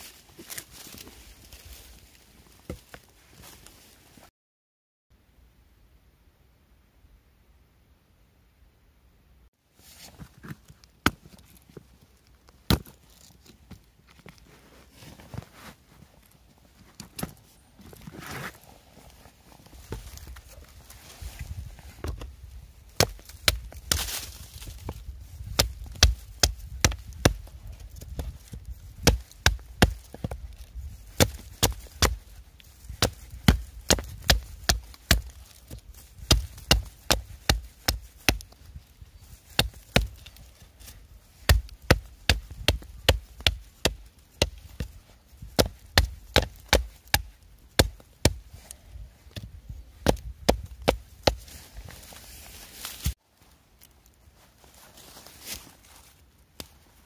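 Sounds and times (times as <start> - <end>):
wood being chopped: 12.7 - 13.0, 23.0 - 38.5, 39.5 - 40.4, 41.4 - 48.5, 49.3 - 51.5.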